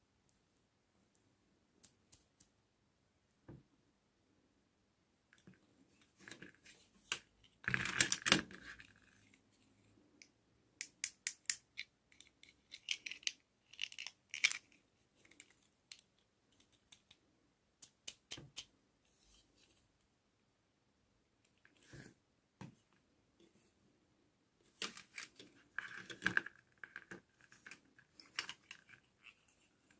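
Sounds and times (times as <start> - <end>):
plastic items clicking: 11.3 - 17.2
crinkling and rustling: 24.6 - 29.9.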